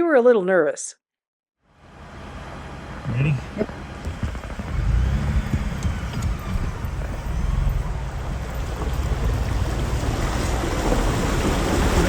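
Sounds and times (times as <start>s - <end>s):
truck engine rumble: 1.8s - 12.0s
water sloshing and splashing: 4.0s - 12.0s.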